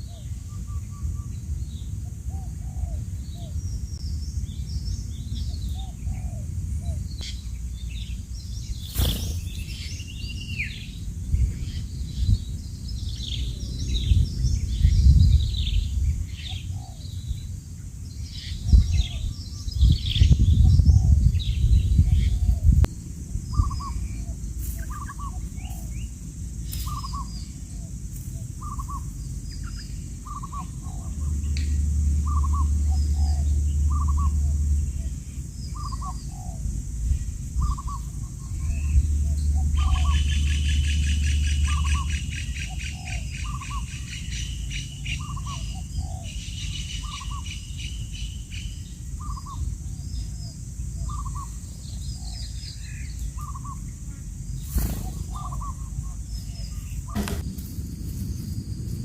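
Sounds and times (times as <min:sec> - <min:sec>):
low rumble: 0:18.1 - 0:44.0, 0:54.4 - 0:59.0.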